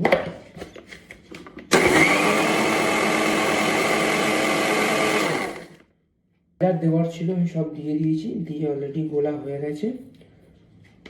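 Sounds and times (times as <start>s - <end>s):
electric mixer grinder whining: 1.7s - 5.8s.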